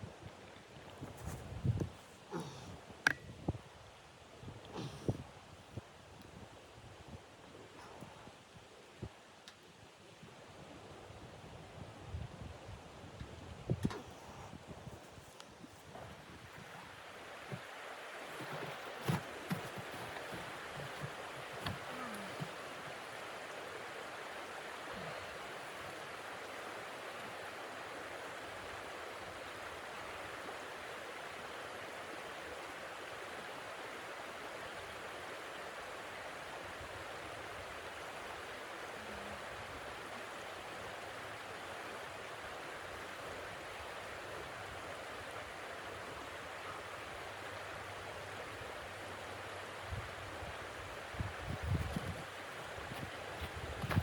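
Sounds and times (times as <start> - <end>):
blizzard wind blowing: 49.9 - 54.0.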